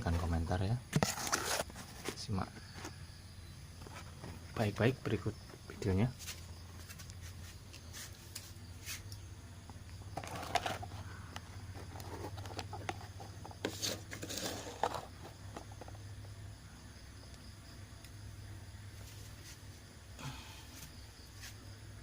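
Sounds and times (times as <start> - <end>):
refrigerator compressor humming: 1.9 - 22.0
handling clicks and rustles: 9.8 - 16.3.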